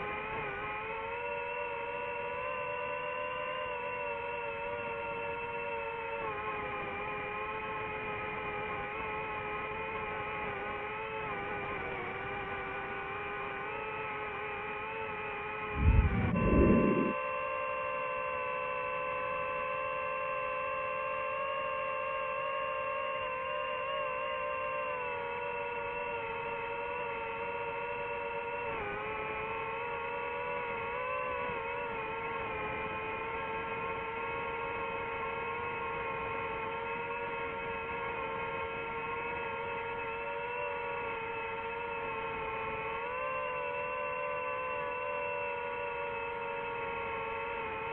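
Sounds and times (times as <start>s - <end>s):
drone propellers whining: 15.6s - 17.2s.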